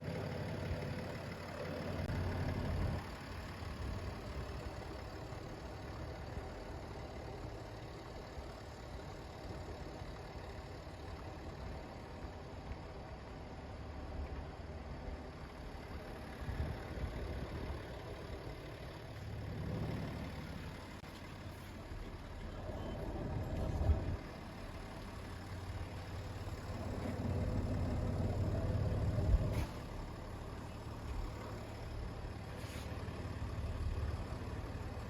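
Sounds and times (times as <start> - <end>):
vehicle engine running: 0.0 - 35.0.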